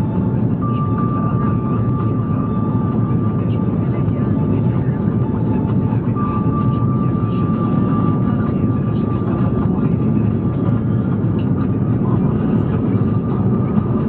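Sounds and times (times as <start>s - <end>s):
faint steady whine: 0.0s - 14.0s.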